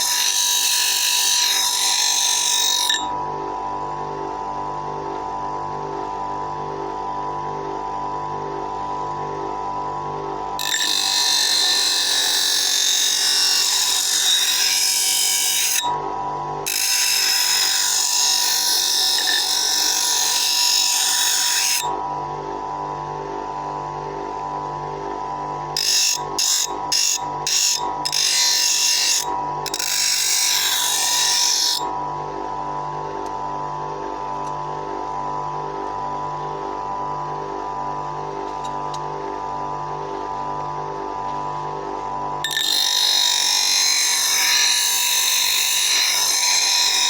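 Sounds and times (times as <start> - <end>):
bench grinder motor humming: 0.0 - 4.3, 8.2 - 47.0
blade grinding on wheel: 10.6 - 15.9, 16.7 - 21.9, 25.8 - 31.9, 42.4 - 47.0.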